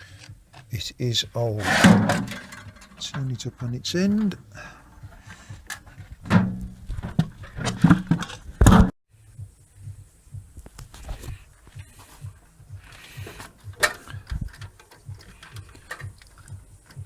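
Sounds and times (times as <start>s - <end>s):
handling clicks and knocks: 1.6s - 8.9s, 12.9s - 17.0s
metal case clunking: 1.6s - 8.9s, 13.2s - 17.0s
faint low repeating pulse: 9.2s - 10.6s.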